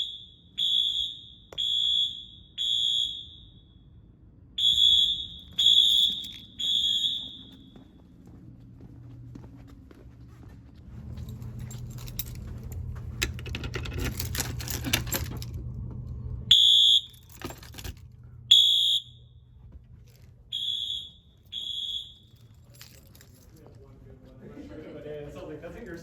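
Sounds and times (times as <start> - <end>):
fire alarm horn blasts: 0.0 - 8.1, 16.5 - 17.4, 18.5 - 19.5, 20.5 - 22.5.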